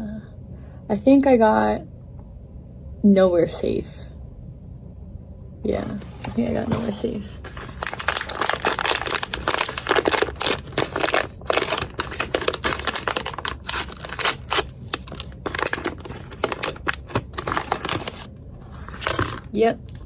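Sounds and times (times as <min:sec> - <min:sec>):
packaging crinkling and rustling: 0:06.0 - 0:20.0.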